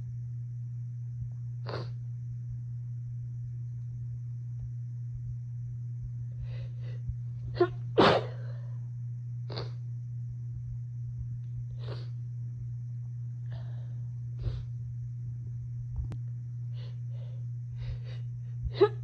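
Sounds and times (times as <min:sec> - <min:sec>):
person sneezing: 0:01.7 - 0:02.0, 0:07.6 - 0:08.5
faint short breaths: 0:13.5 - 0:14.7, 0:16.7 - 0:18.3.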